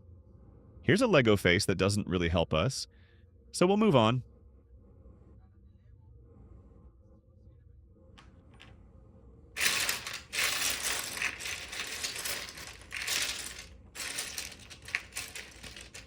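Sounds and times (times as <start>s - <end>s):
plastic bricks clattering: 9.6s - 16.0s.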